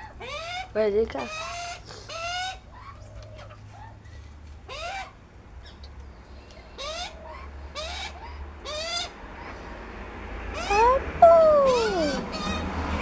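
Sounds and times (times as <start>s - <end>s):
bird calling: 10.6s - 13.0s.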